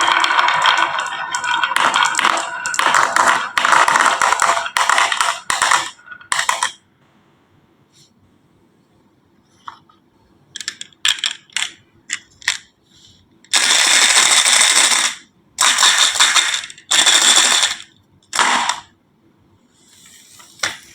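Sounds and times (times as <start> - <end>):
rattling marble runs: 0.0 - 6.8, 13.5 - 18.9
toy pieces clattering down wooden slope: 0.0 - 6.8, 10.6 - 12.7, 13.5 - 18.9.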